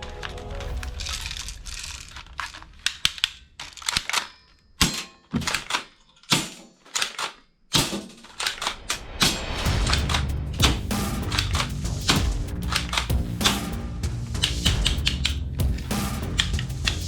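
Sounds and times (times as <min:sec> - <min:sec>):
toy gun clicks and clacks: 0:02.1 - 0:09.1, 0:12.7 - 0:13.1, 0:16.3 - 0:17.0.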